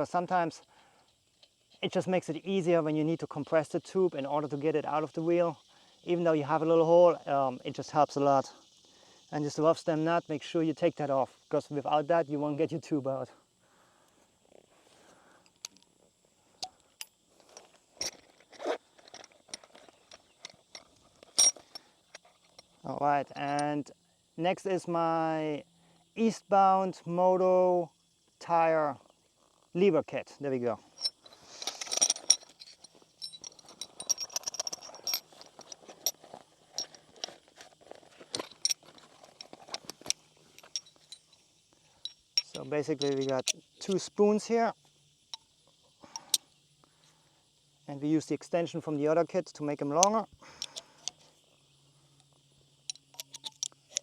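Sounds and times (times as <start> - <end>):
tools and metal parts clicking: 16.6 - 22.7, 23.3 - 23.7, 31.0 - 41.4, 42.0 - 44.1, 50.0 - 51.3, 52.9 - 54.0
metal tire levers clinking: 17.0 - 22.2, 31.0 - 37.4, 42.0 - 44.0, 52.9 - 54.0.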